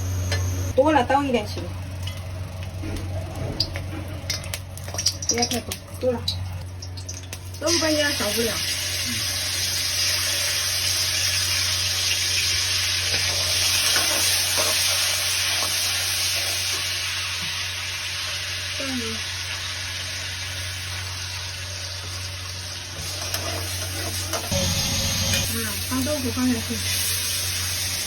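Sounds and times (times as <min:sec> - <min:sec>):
paste sizzling in hot oil: 0:07.0 - 0:28.0.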